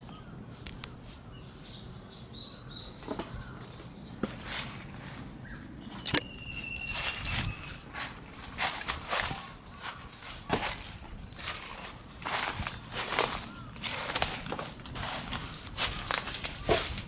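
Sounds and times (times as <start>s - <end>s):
long steady bird whistle: 5.5s - 7.9s
songbird high notes: 5.9s - 8.0s
footsteps: 5.9s - 17.0s
twigs snapping underfoot: 5.9s - 17.0s.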